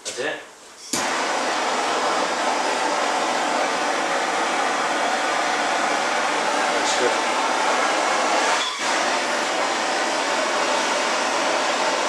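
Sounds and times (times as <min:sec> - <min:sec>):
rushing air hiss: 0:00.8 - 0:12.0.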